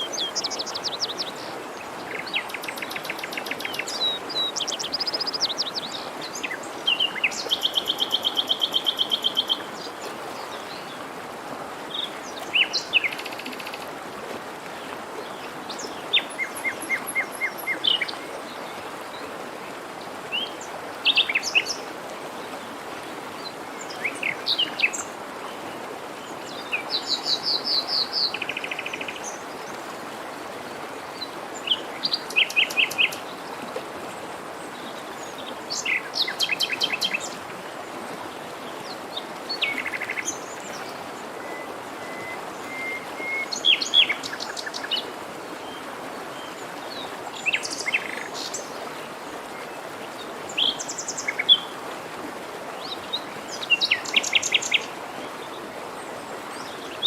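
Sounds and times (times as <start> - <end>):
songbirds singing: 0.0 - 11.0, 15.2 - 19.3, 34.5 - 37.5, 38.4 - 51.8, 52.8 - 57.0
forest stream rushing: 0.0 - 57.0.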